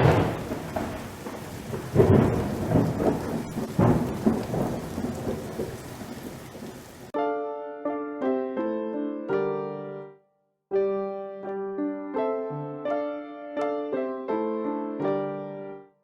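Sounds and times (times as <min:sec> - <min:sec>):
piano music: 0:00.0 - 0:01.2, 0:07.1 - 0:16.0
rain hiss: 0:00.0 - 0:07.1
thunder claps: 0:00.0 - 0:07.1.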